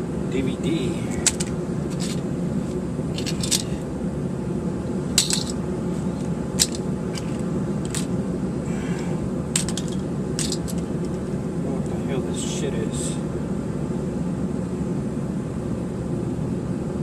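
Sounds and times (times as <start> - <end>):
steady low hum: 0.0 - 17.0
small hard objects clacking: 5.2 - 5.6, 6.6 - 8.1, 9.6 - 10.9.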